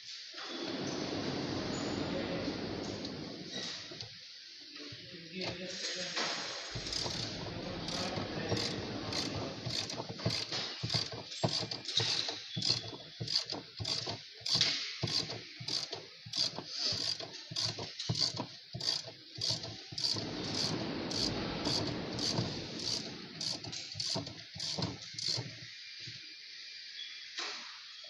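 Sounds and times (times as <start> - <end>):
ratchet clicking: 6.7 - 25.6.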